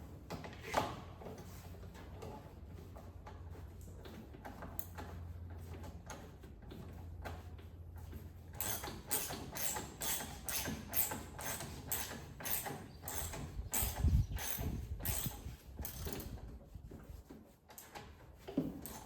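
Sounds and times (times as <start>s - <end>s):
ratchet wrench clicking: 8.6s - 16.2s.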